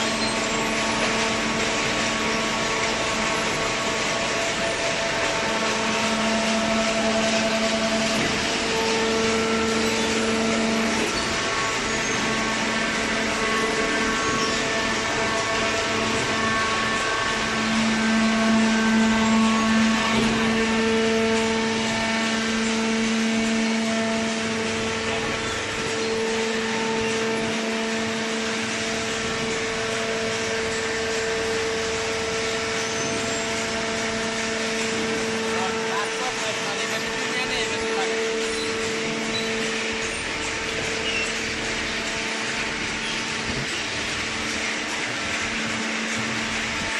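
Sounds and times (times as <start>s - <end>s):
electric motor and pump humming: 0.0s - 46.9s
hydraulic baler running: 0.0s - 46.9s.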